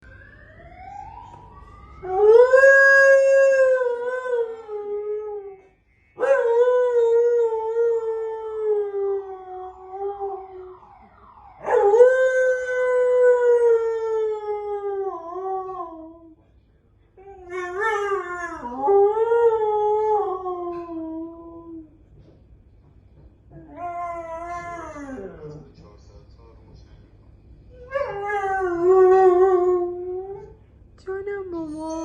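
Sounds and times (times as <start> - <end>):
car alarm: 0.0 - 2.2, 5.5 - 6.5
dog howling: 23.6 - 25.6, 27.7 - 30.6.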